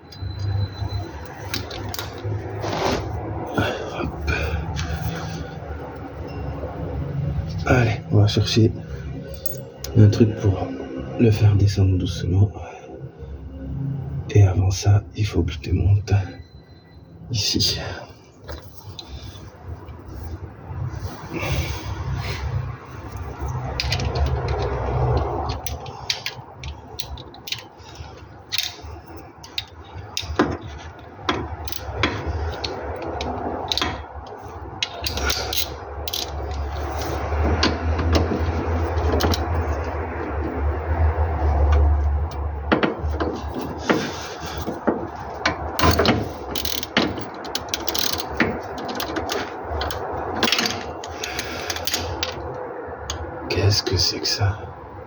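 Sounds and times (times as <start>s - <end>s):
ratchet wrench clicking: 23.1s - 27.7s, 28.5s - 30.4s, 31.2s - 39.9s, 44.6s - 52.4s.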